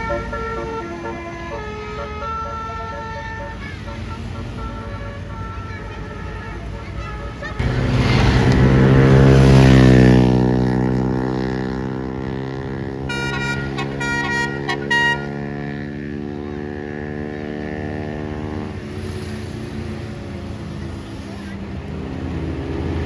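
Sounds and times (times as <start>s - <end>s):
melody horn short high notes: 0.0s - 9.6s, 13.1s - 15.4s
bus diesel engine passing: 0.0s - 23.0s.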